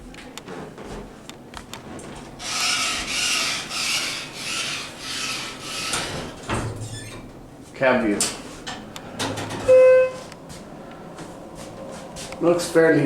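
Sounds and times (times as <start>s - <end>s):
elevator door scraping: 2.0s - 10.3s.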